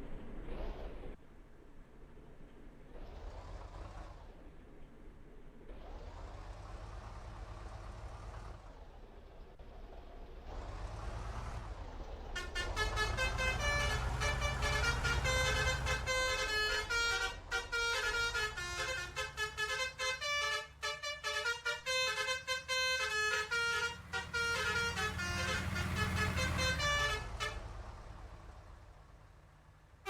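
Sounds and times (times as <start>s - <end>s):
bus engine rumble: 0.0s - 30.0s
musical horn melody: 12.4s - 27.9s.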